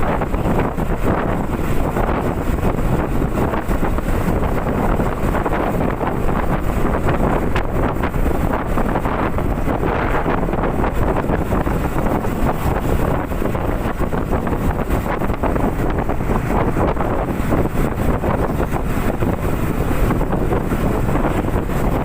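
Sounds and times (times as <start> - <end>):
motorcycle engine running: 0.0 - 22.0
wind buffeting microphone: 0.0 - 22.0.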